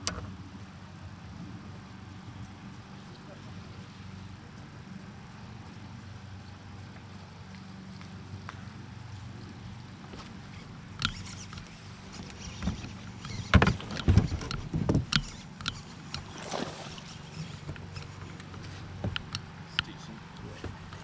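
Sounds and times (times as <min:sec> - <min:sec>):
knocks and thumps on a boat: 0:12.1 - 0:19.7, 0:20.4 - 0:21.0.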